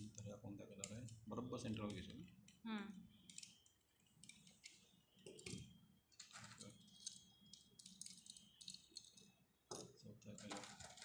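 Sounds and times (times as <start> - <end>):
toy cars clicking: 6.2 - 9.3, 10.4 - 11.0.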